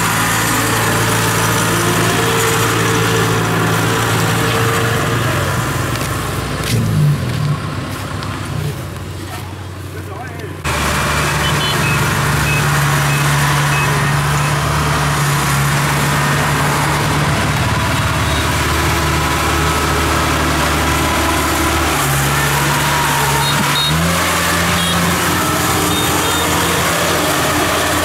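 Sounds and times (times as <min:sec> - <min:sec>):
diesel engine running steadily: 0:00.0 - 0:28.0.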